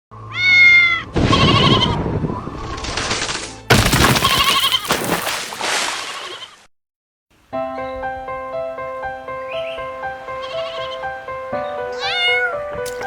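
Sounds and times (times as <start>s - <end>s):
cat meowing: 0.3s - 1.8s, 11.7s - 13.0s.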